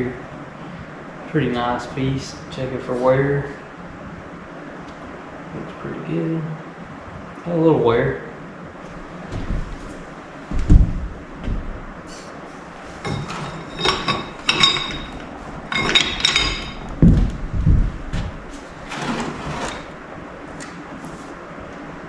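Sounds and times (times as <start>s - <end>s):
ringing metallic clinks: 13.6s - 16.8s.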